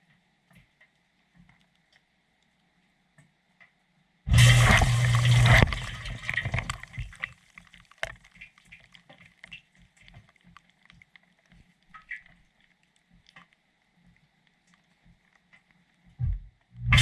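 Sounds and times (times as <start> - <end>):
low hum: 4.3 - 7.2, 16.2 - 17.0
water gushing in dishwasher: 4.3 - 7.2
water splashes and drips: 4.3 - 15.6.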